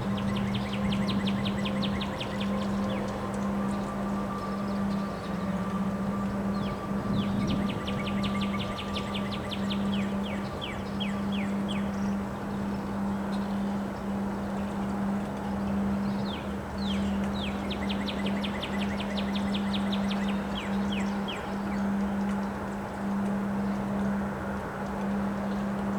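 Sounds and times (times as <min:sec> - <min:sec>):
steady low hum: 0:00.0 - 0:25.9
wind noise: 0:06.5 - 0:08.7.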